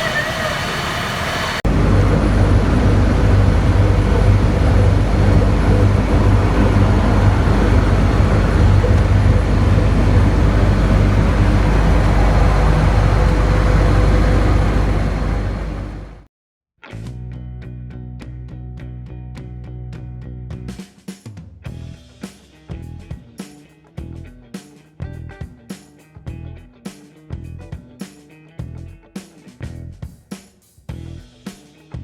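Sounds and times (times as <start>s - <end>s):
diesel truck engine rumbling: 0.0s - 16.3s.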